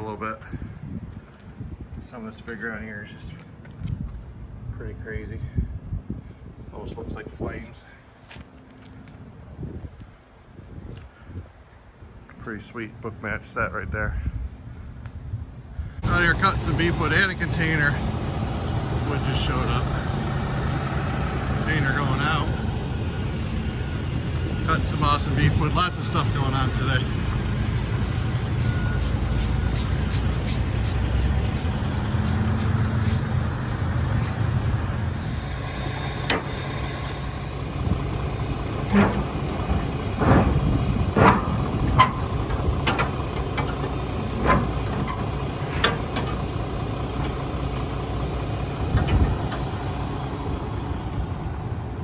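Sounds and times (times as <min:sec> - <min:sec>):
heavy engine running: 0:16.0 - 0:52.0
sharp knocks and clanks: 0:36.2 - 0:47.6.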